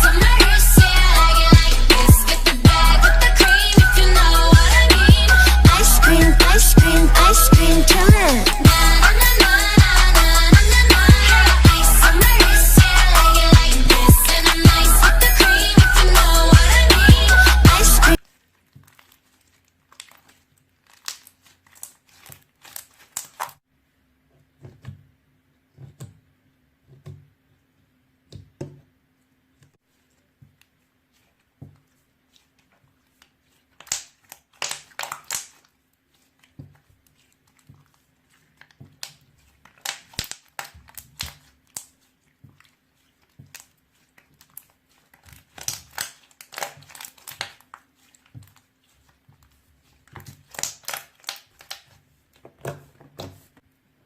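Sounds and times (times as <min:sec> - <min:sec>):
slime crackling and popping: 0:18.2 - 0:23.6, 0:33.2 - 0:52.0.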